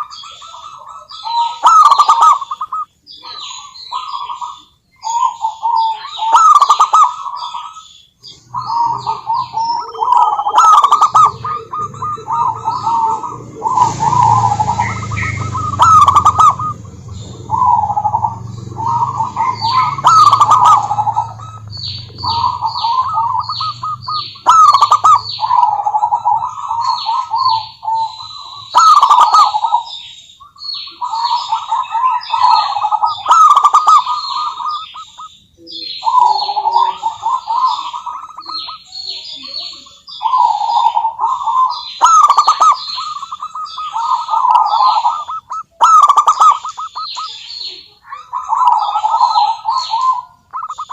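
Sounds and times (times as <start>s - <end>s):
doves cooing: 0.0s - 50.9s
small birds chirping: 0.0s - 50.9s
low hum: 11.1s - 27.9s.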